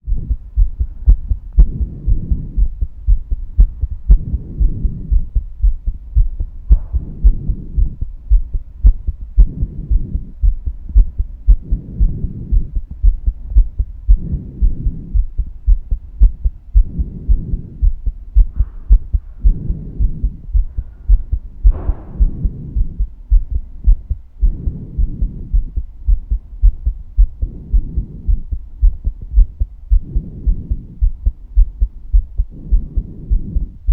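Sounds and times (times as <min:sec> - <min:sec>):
heartbeat thuds: 0:00.0 - 0:33.9.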